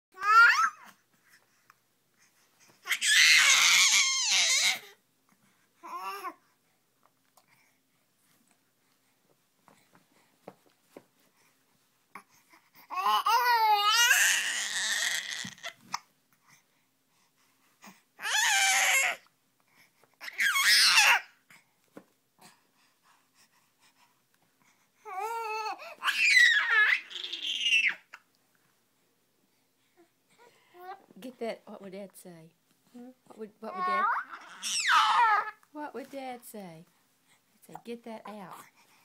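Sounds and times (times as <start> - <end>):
baby babbling: 0.1 - 1.0, 5.8 - 6.4, 12.9 - 15.7, 33.7 - 35.6.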